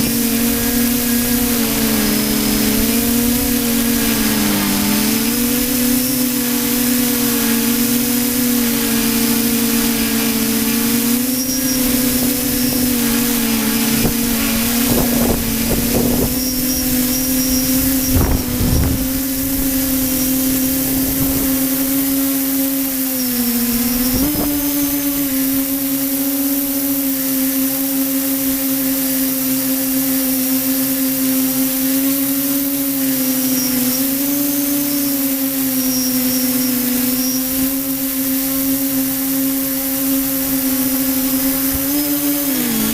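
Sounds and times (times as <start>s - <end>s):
model aircraft engine running: 0.0s - 42.9s
wind buffeting microphone: 12.4s - 22.0s.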